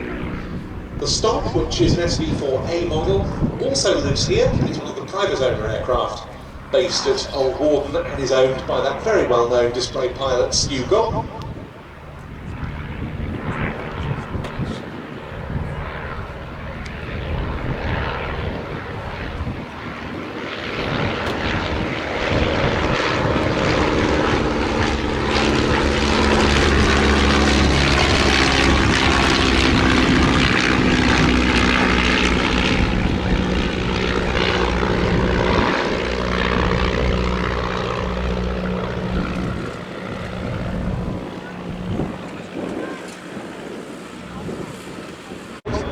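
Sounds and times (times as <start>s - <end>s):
biplane engines droning: 0.0s - 45.9s.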